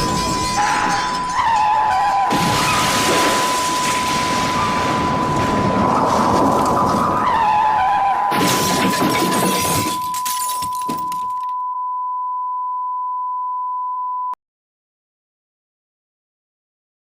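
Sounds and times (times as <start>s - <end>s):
building collapsing crash: 0.0s - 11.2s
glass and debris breaking: 0.0s - 11.5s.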